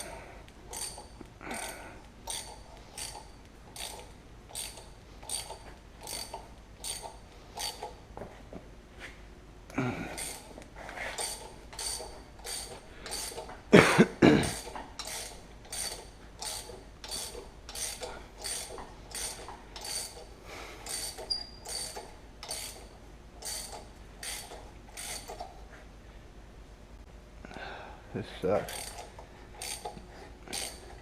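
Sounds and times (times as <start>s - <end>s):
ratchet wrench cranking: 0.7s - 8.0s, 10.2s - 10.5s, 11.1s - 13.6s, 14.5s - 25.5s, 28.6s - 31.0s.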